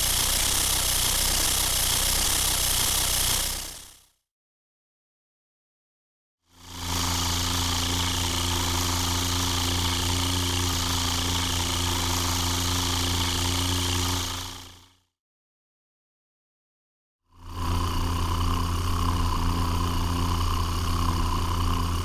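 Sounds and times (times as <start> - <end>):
aircraft engine drone: 0.0 - 3.8.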